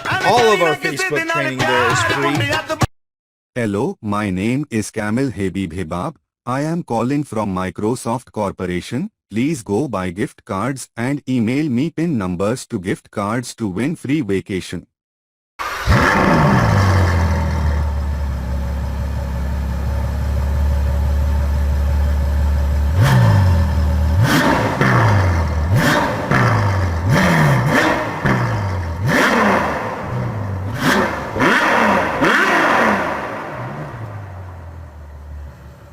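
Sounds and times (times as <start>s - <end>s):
engine idling and revving: 15.6s - 35.9s.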